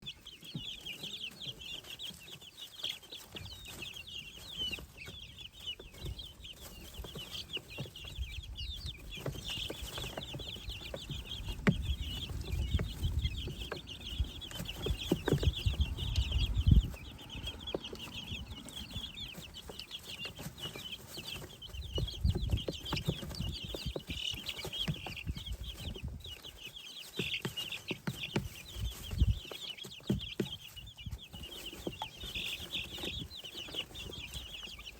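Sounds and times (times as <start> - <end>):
chicks and ducklings peeping: 0.0 - 34.9
low rumble: 11.2 - 19.4.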